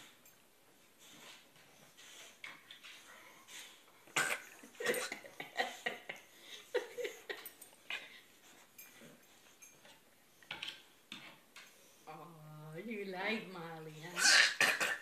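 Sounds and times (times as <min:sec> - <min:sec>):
person coughing: 0:04.2 - 0:05.6, 0:14.2 - 0:15.0.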